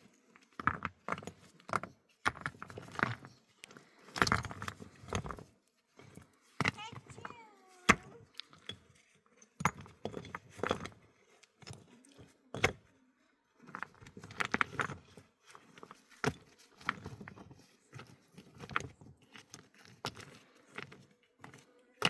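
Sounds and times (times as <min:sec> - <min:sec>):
objects knocking and clattering: 0:00.5 - 0:03.3, 0:09.5 - 0:12.9.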